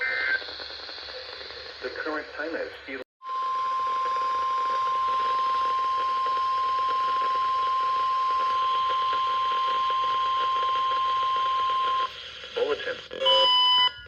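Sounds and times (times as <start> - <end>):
faint radio hiss: 0.0 - 3.0, 12.1 - 13.2
steady high alarm tone: 3.2 - 12.2, 13.1 - 14.0.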